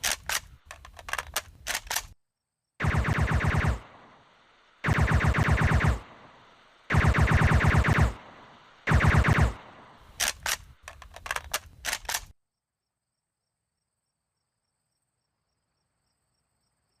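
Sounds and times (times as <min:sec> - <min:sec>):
suppressed submachine gun bursts: 0:00.0 - 0:02.1, 0:10.0 - 0:12.3.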